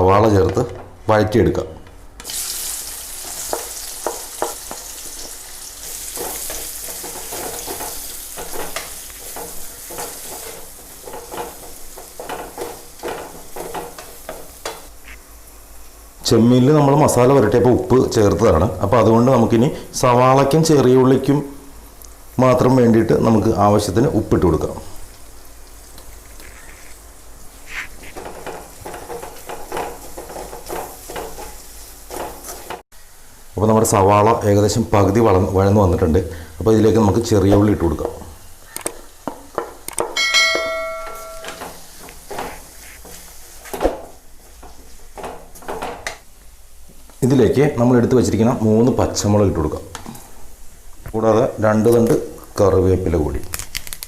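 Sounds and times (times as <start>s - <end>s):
onions sizzling in a pan: 2.2s - 53.1s
spoon scraping and tapping pan: 6.1s - 14.9s, 27.7s - 32.8s, 39.2s - 43.8s.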